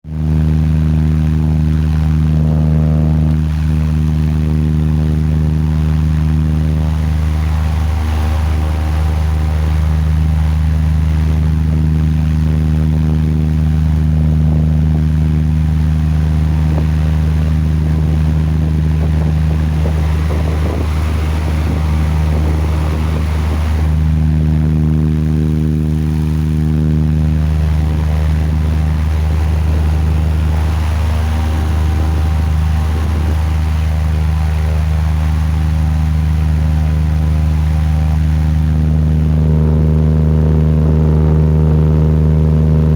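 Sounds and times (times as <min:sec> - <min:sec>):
electric fan humming: 0:00.0 - 0:42.9.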